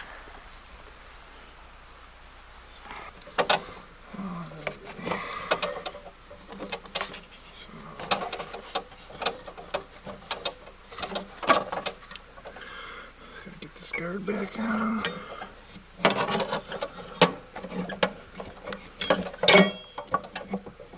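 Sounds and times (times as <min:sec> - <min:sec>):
hand tools clinking on metal: 0:04.6 - 0:07.1, 0:14.8 - 0:20.8.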